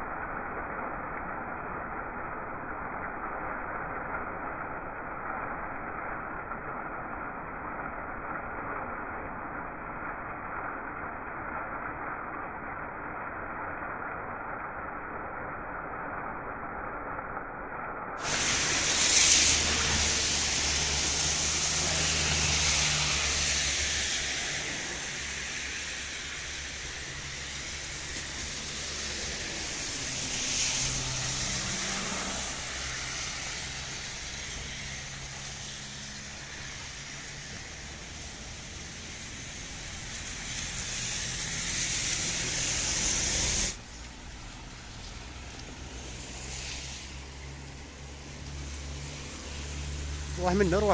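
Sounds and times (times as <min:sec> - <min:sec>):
heavy rain hissing: 0:00.0 - 0:50.9
low engine hum: 0:18.3 - 0:50.9.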